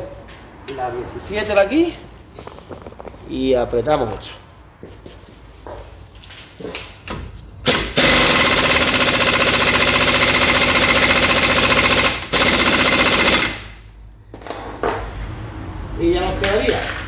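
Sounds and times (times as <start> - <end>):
impact wrench hammering: 7.1 - 13.9.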